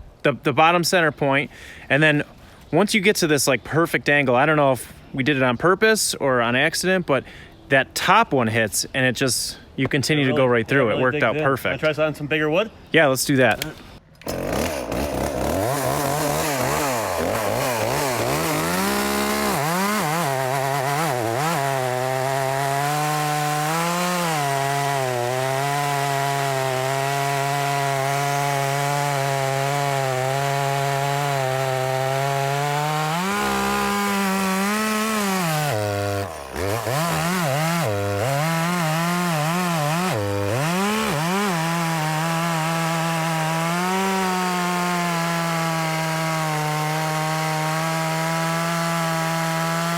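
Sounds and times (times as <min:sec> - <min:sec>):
chainsaw cutting log: 0:13.5 - 0:49.9.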